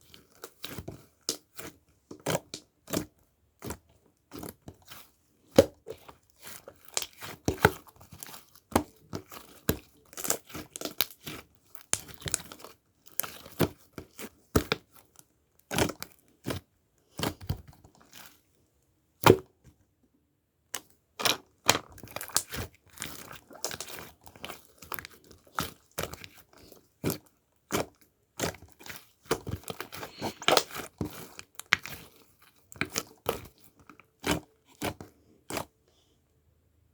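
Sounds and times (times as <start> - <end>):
crinkling and crackling: 22.0 - 35.7.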